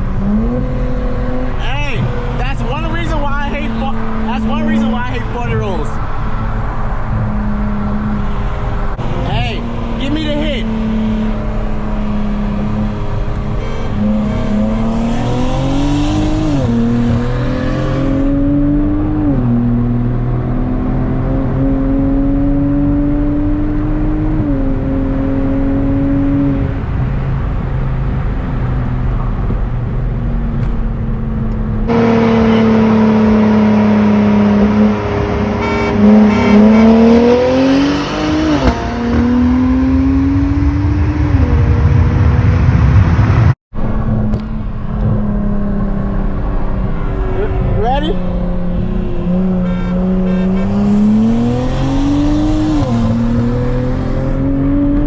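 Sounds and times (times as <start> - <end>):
car engine at full throttle: 0.0 - 55.0.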